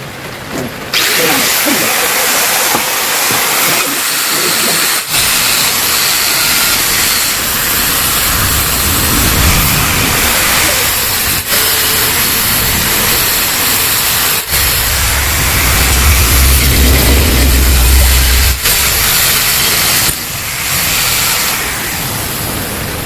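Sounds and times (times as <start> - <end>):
loud steady hiss: 0.0 - 23.0
low engine rumble: 12.2 - 20.5.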